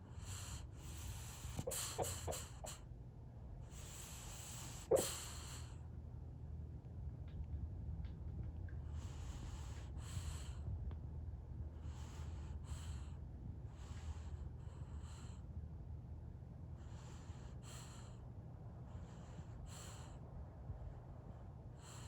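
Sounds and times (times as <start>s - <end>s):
dog snoring: 0.1s - 2.8s, 3.7s - 5.8s.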